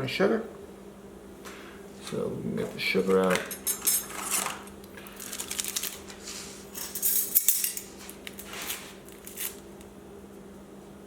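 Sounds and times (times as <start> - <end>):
metal spoon clinking against dishes: 3.4 - 4.1, 6.8 - 7.9.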